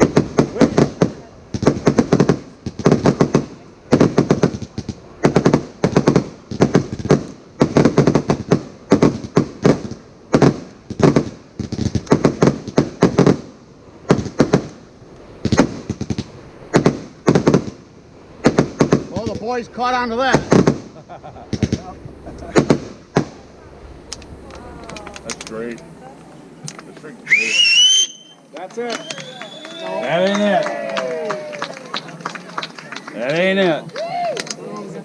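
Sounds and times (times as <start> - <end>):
fireworks bangs and cracks: 0.0 - 25.9.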